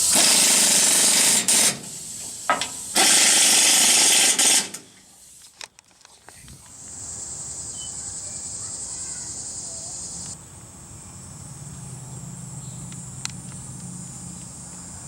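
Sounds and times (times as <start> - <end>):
insects chirring: 5.6 - 15.0.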